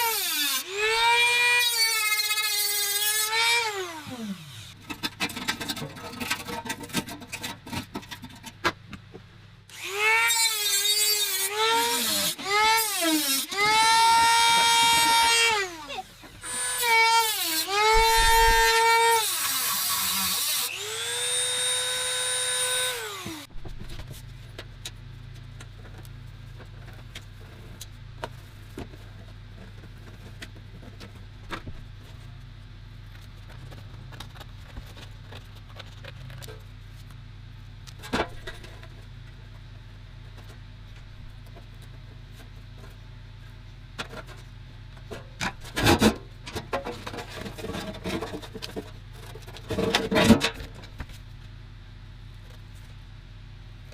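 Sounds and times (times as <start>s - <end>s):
rotary tool high-pitched whine: 0.0s - 4.8s, 9.7s - 23.5s.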